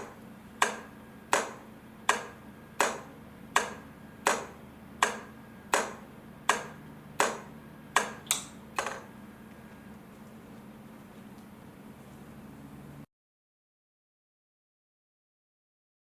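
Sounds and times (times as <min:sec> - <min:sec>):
crossing-light flasher clicking: 0:00.0 - 0:09.6
faint steady hum: 0:00.0 - 0:13.1.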